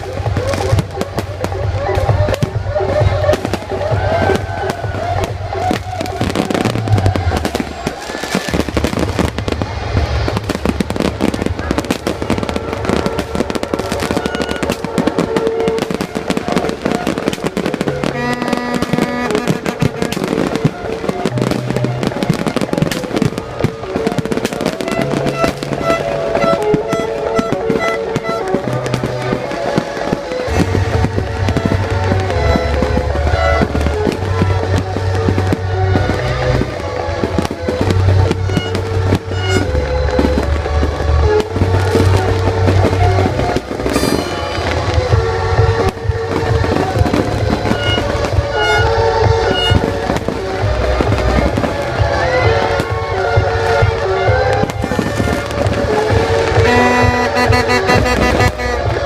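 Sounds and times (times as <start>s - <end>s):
fireworks bursting and crackling: 0.0s - 59.0s
music with heavy bass: 0.0s - 59.0s.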